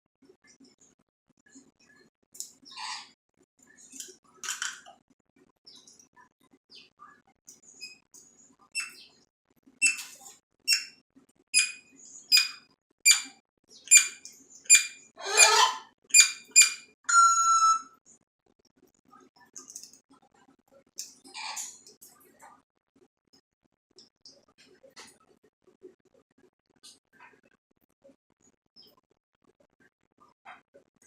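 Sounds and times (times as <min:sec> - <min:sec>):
parrot chirping and squawking: 0:09.8 - 0:10.1, 0:11.6 - 0:13.3, 0:13.9 - 0:16.9
parrot whistle: 0:13.9 - 0:17.9.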